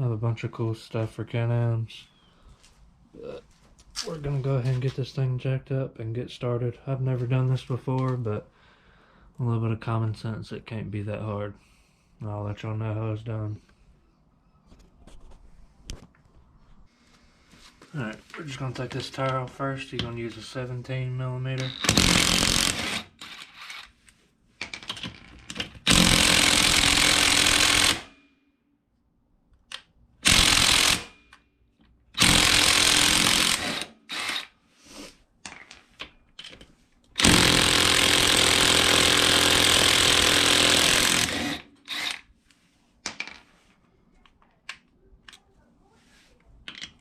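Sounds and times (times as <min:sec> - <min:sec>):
impact wrench hammering: 0:21.7 - 0:23.5, 0:25.8 - 0:28.2, 0:30.2 - 0:31.4, 0:32.2 - 0:34.5, 0:37.2 - 0:42.2
clicks of handling nuts: 0:46.6 - 0:47.0.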